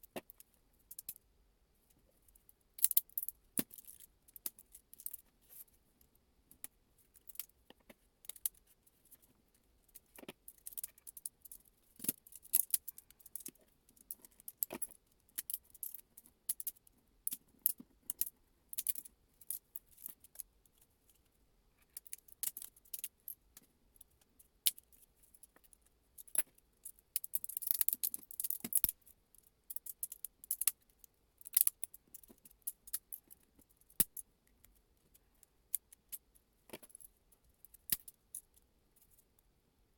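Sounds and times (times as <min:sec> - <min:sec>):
small hard objects clicking: 0:21.9 - 0:23.1, 0:24.6 - 0:29.0, 0:29.7 - 0:37.1, 0:37.7 - 0:38.4.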